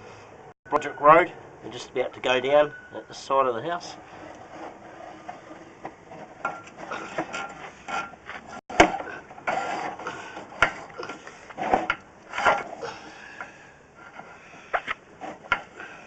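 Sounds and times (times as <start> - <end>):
footsteps and scuffing: 7.6 - 8.6.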